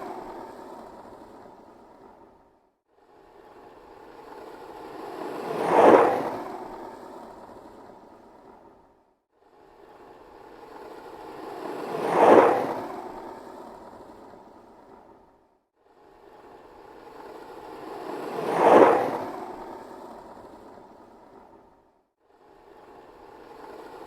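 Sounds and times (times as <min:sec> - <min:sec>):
skateboard rolling past: 0:00.0 - 0:02.2, 0:04.3 - 0:07.8, 0:11.0 - 0:14.2, 0:17.4 - 0:21.6.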